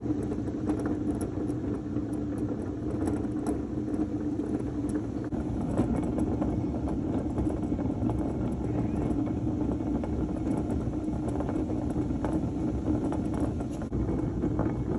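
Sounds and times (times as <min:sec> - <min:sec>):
scooter engine drone: 0:00.0 - 0:14.9.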